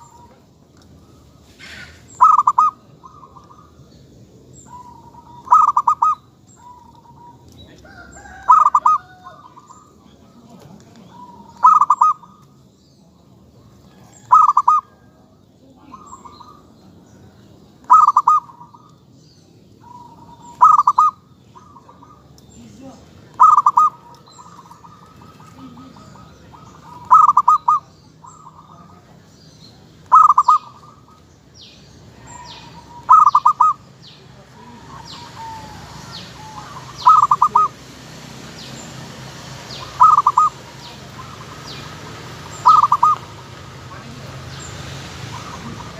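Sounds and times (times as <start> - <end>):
dove cooing: 1.0 - 3.8, 4.6 - 12.5, 13.9 - 15.2, 17.8 - 18.9, 19.8 - 22.3, 23.2 - 29.2, 30.0 - 31.2, 32.1 - 45.9.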